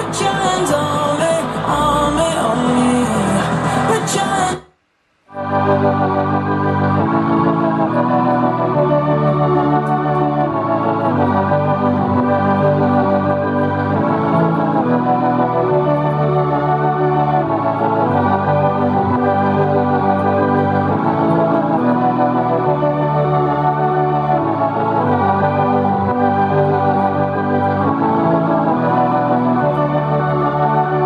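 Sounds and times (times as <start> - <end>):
instrumental pop music on speaker: 0.0 - 4.7, 5.3 - 31.0.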